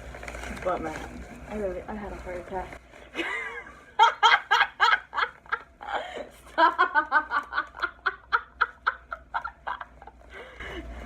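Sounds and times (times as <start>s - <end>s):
woman laughing hard: 3.2s - 10.7s.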